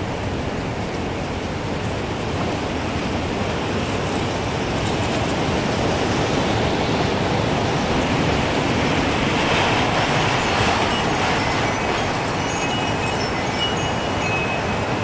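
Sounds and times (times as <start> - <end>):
gusting wind: 0.0 - 15.0
faint wind chimes: 8.8 - 15.0.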